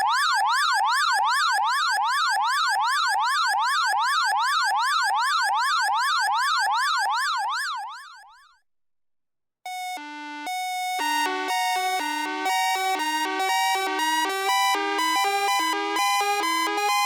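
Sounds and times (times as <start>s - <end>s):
electronic alarm siren sweeping: 9.7s - 17.0s.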